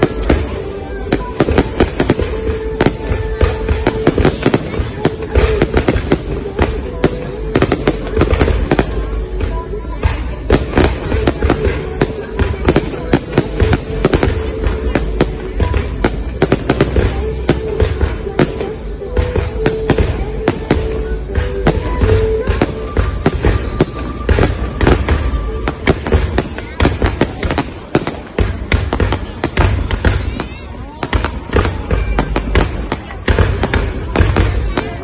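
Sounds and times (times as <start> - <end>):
fireworks bangs and crackles: 0.0 - 35.0
music with held notes: 0.0 - 35.0.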